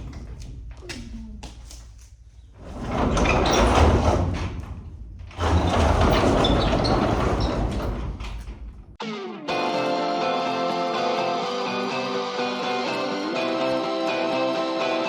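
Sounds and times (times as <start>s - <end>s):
guitar music: 9.0s - 15.0s.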